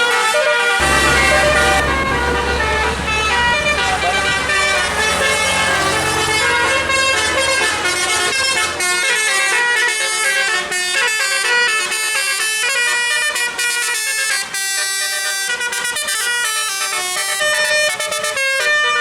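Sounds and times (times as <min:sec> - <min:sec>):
musical air horn melody: 0:00.0 - 0:19.0
low engine rumble: 0:00.8 - 0:08.9.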